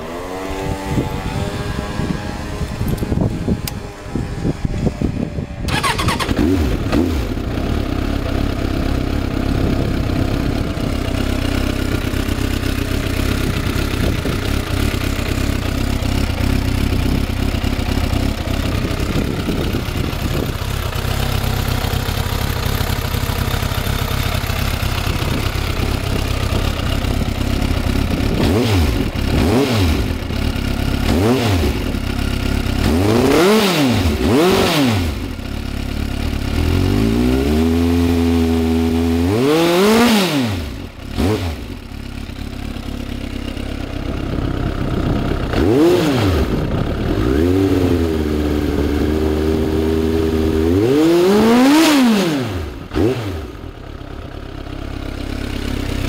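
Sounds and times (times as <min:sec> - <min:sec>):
motorcycle engine idling: 0:00.0 - 0:39.3, 0:40.6 - 0:56.0
motorcycle engine revving: 0:00.0 - 0:56.0
motorcycle engine cranking: 0:05.7 - 0:36.5.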